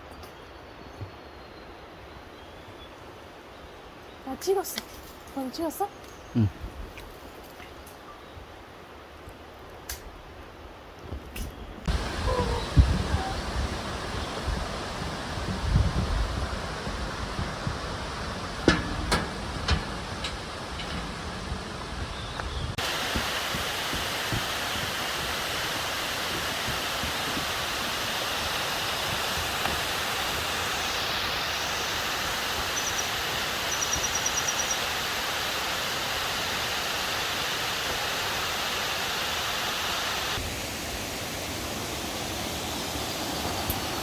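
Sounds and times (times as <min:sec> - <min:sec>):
water rushing in a gorge: 0:22.7 - 0:44.0.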